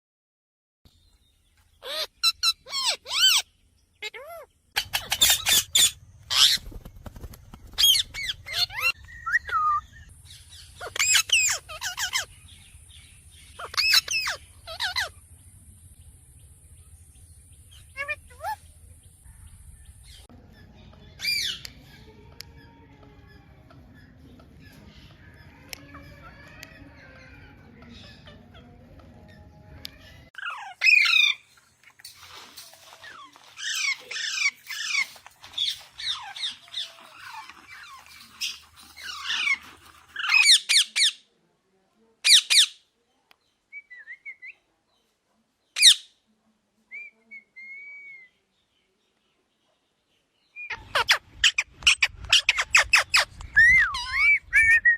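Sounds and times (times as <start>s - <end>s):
parrot screeching: 1.8s - 3.4s, 10.8s - 12.3s, 13.6s - 15.1s.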